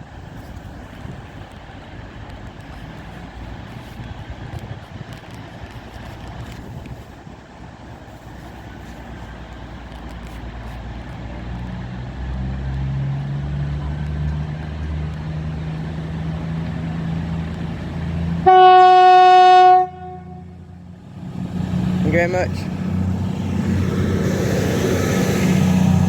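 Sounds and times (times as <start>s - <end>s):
train diesel engines droning: 0.0s - 26.0s
train horn: 18.4s - 20.8s.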